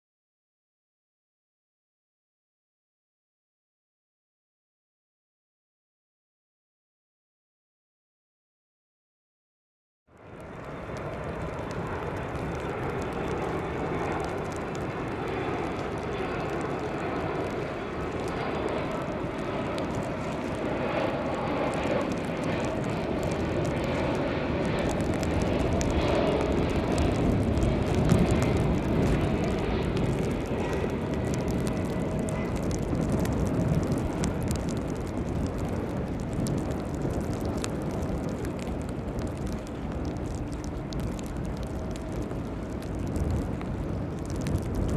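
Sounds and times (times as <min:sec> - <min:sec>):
jet airliner passing by: 0:10.1 - 0:44.9.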